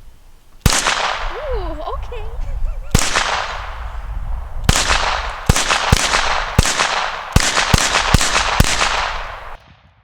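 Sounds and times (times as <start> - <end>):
pistol shots: 0.6 - 1.3, 2.9 - 3.8, 4.6 - 9.8.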